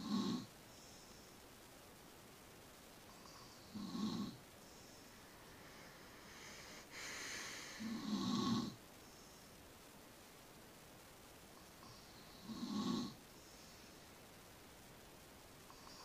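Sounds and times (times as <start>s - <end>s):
long hissing breath: 0.0s - 1.5s, 4.6s - 9.6s, 11.6s - 14.3s
person snoring: 6.1s - 8.8s.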